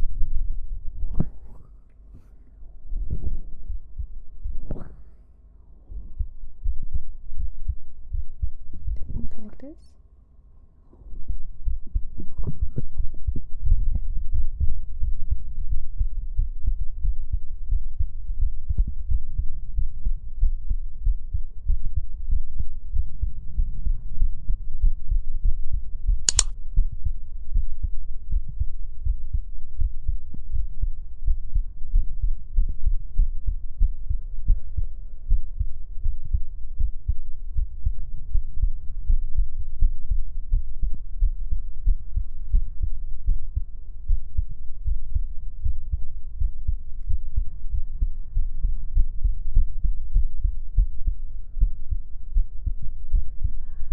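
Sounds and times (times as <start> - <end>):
heartbeat thumps: 0.0 - 9.8, 10.9 - 53.9
sharp click: 26.2 - 26.6.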